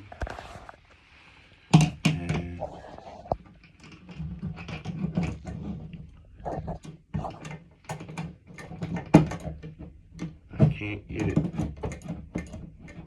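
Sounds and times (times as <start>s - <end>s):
drain plunger linkage rattling: 3.4s - 13.0s.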